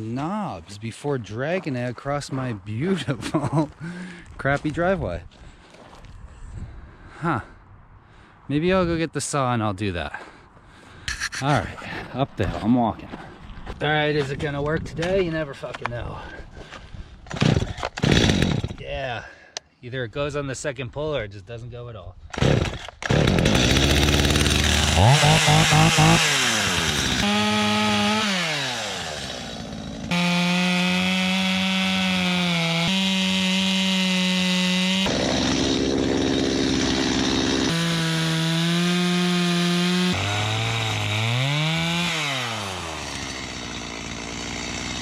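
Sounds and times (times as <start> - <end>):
chainsaw cutting wood: 17.3 - 18.8, 22.4 - 45.0.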